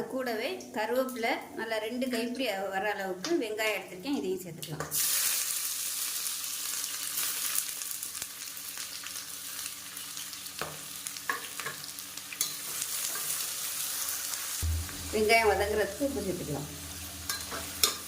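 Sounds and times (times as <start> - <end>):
onions sizzling in hot oil: 4.9 - 18.0.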